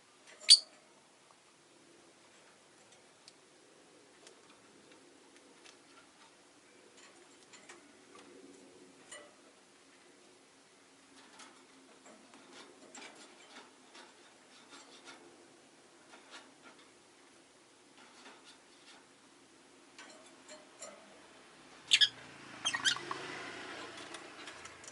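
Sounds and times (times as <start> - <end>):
bird chirps: 0.4 - 0.7, 21.9 - 23.2.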